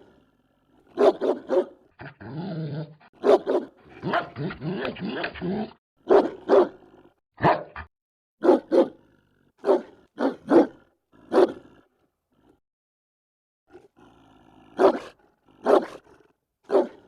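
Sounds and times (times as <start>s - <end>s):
dog barking aggressively: 0.9s - 2.1s, 3.1s - 9.0s, 9.6s - 11.7s, 14.7s - 17.0s
dog growling: 2.0s - 3.2s, 13.7s - 17.0s.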